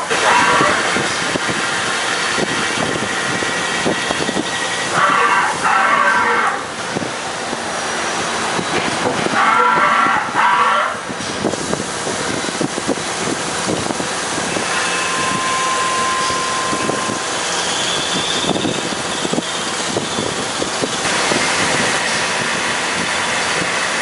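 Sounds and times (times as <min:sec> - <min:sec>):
steady whine: 0:13.8 - 0:19.8.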